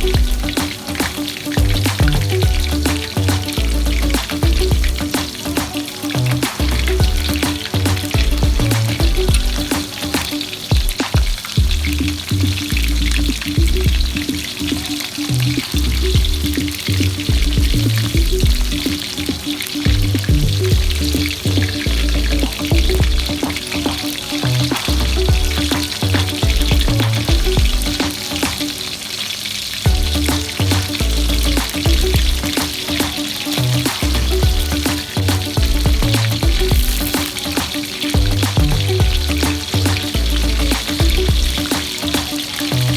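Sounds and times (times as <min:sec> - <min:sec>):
music with deep bass: 0:00.0 - 0:28.6, 0:29.9 - 0:42.9
food sizzling in a pan: 0:27.0 - 0:38.2, 0:38.8 - 0:42.9.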